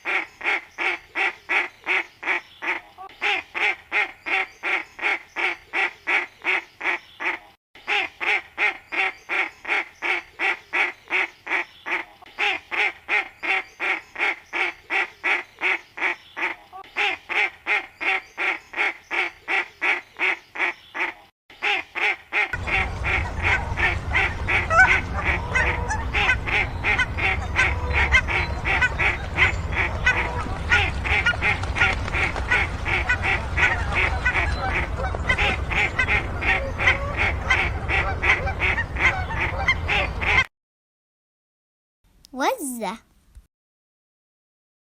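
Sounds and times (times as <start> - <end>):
ducks quacking: 0.1 - 40.5
low background rumble: 22.6 - 39.6.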